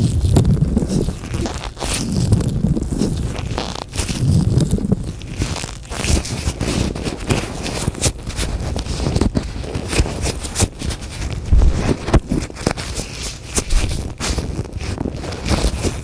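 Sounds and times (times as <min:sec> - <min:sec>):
latex gloves crinkling: 0:00.0 - 0:16.0
low handling rumble: 0:11.5 - 0:12.2.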